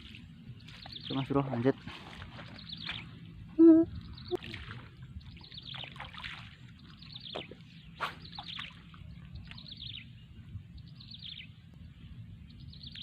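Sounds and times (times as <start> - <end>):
birds chirping: 0.1 - 13.0
low steady rumble: 6.5 - 13.0.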